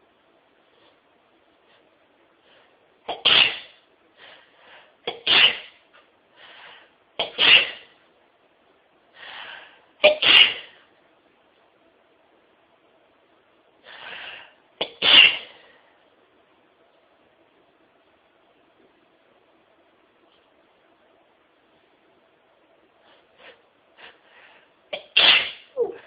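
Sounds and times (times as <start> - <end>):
woman sneezing: 3.1 - 3.8, 5.1 - 5.8, 7.2 - 7.9, 10.0 - 10.8, 14.8 - 15.6, 25.0 - 26.0.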